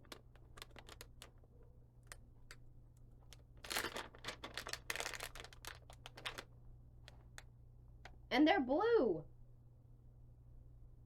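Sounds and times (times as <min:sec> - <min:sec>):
plastic snack bag crinkling: 0:00.0 - 0:02.2, 0:03.1 - 0:07.5.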